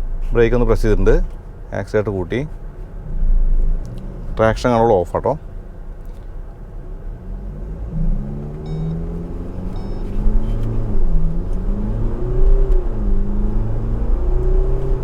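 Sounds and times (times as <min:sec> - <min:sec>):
diesel engine accelerating hard: 0:00.0 - 0:15.0.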